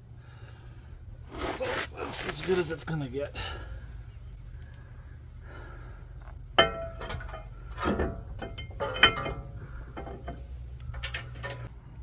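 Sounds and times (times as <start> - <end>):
metal parts clinking: 6.6 - 11.7.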